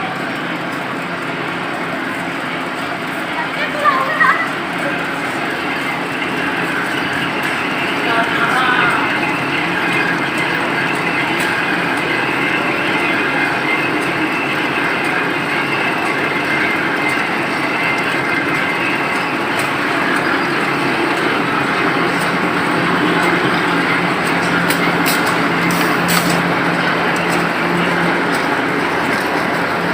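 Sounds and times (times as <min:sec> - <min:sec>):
printing machine running: 0:00.0 - 0:29.9.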